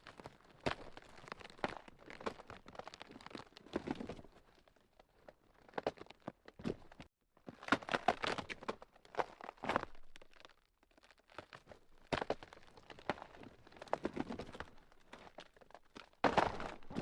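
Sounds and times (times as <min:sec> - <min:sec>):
ground cracking and snapping: 0:00.0 - 0:04.7, 0:05.6 - 0:17.0.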